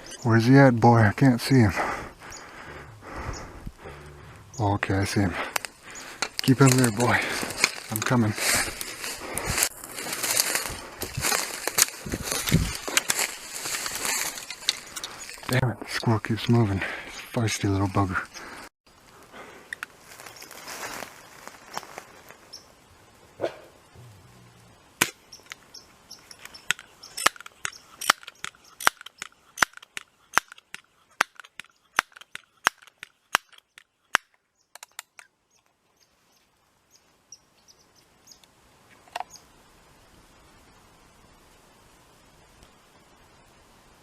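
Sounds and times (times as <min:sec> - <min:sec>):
air pistol pump clicks: 0:26.7 - 0:35.3.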